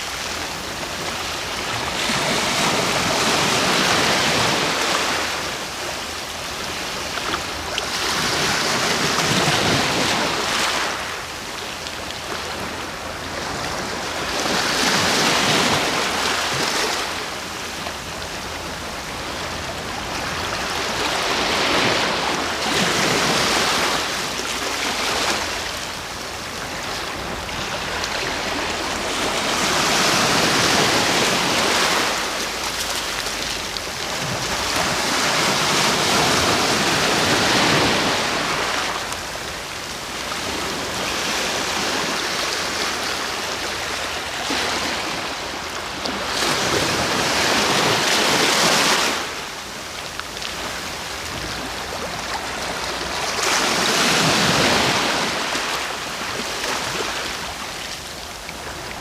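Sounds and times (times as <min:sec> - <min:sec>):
sea waves breaking on shore: 0:00.0 - 0:59.0.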